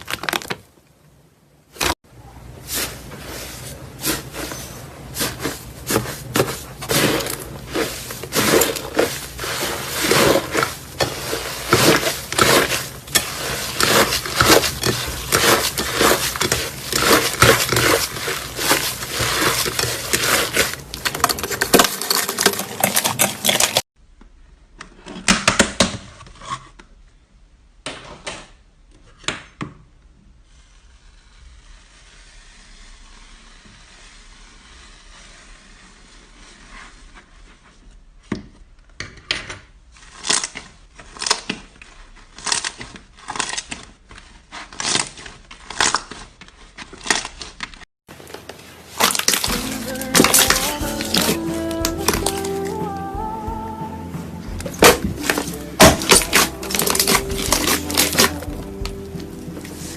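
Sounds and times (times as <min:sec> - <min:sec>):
slime squishing: 0:02.4 - 0:23.8, 0:40.0 - 0:52.8, 0:54.4 - 0:59.9
slime crackling and popping: 0:54.8 - 0:59.0.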